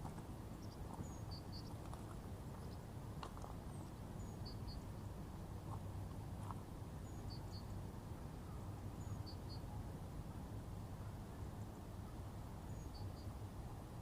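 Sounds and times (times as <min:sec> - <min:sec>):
small bird chirping: 0:00.6 - 0:02.8, 0:03.7 - 0:05.1, 0:07.0 - 0:07.8.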